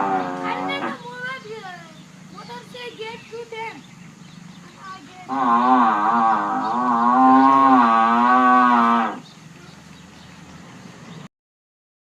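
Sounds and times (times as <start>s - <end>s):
cow mooing: 0.0s - 1.0s, 5.3s - 9.2s.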